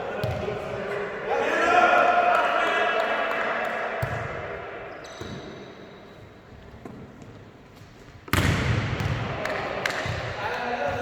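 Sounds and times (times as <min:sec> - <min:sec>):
volleyball thumps: 0:08.3 - 0:10.3
players' voices: 0:09.1 - 0:11.0.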